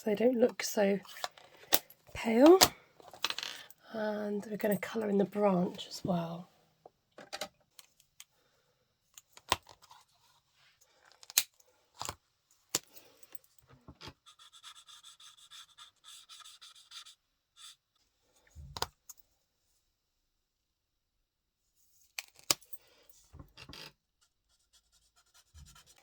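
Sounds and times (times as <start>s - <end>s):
squeaky coloring strokes on card: 14.2s - 17.8s.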